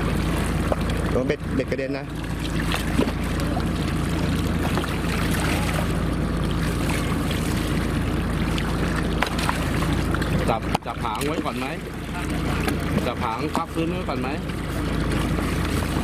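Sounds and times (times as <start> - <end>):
boat engine humming: 0.0 - 16.0
water noise: 0.0 - 16.0
wind: 0.0 - 16.0.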